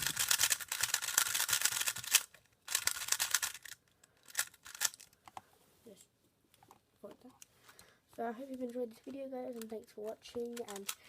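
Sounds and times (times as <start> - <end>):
puzzle cube clicking: 0.0 - 5.3, 8.4 - 11.0.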